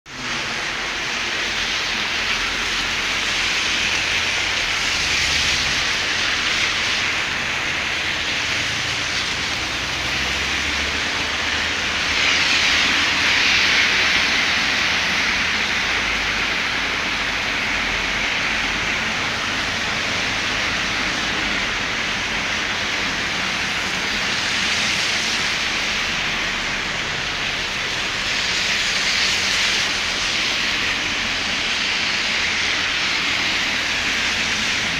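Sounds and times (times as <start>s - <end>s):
heavy rain falling: 0.1s - 34.9s.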